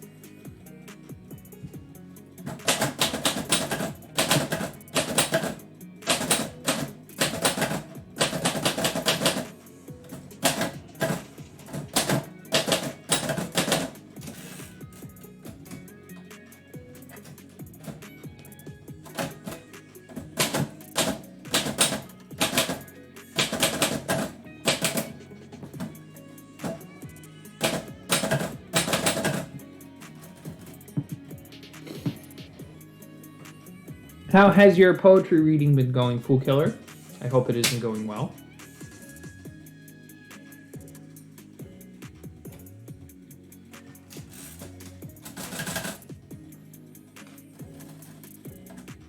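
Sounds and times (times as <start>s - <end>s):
background music: 0.0s - 49.0s
typewriter keys clacking: 2.5s - 15.8s, 19.0s - 25.9s, 27.6s - 29.6s, 44.1s - 46.2s.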